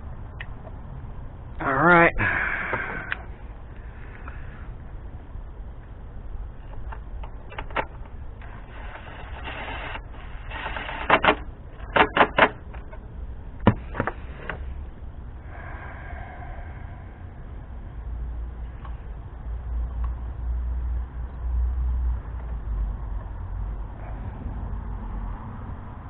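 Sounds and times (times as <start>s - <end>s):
steady low rumble: 0.0s - 26.0s
clicks and rustling of hand work: 6.7s - 13.0s
sharp knocks: 13.6s - 14.2s.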